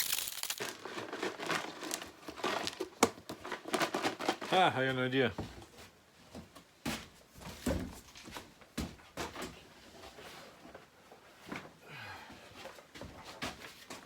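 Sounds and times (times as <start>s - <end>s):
objects knocking and clunking: 0.0s - 4.6s.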